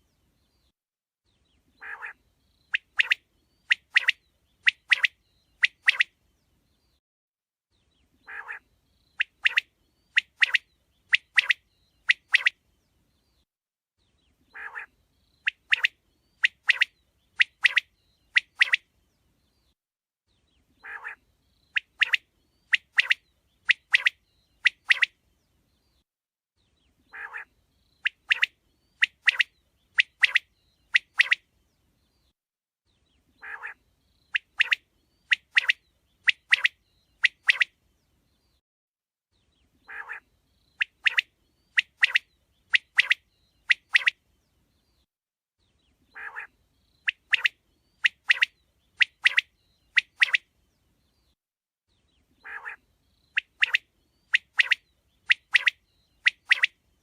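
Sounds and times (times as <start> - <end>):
quail calling: 1.8 - 6.1, 8.2 - 8.6, 14.5 - 14.9, 20.8 - 21.2, 27.1 - 27.5, 33.4 - 33.8, 39.9 - 41.2, 46.1 - 46.5, 52.4 - 52.8.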